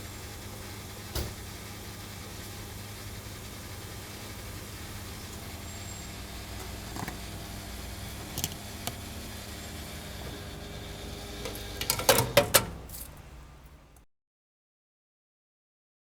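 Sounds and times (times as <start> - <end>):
fuel pump humming: 0.0 - 14.0
sharp clicks and clanks: 8.2 - 9.0, 11.4 - 13.2.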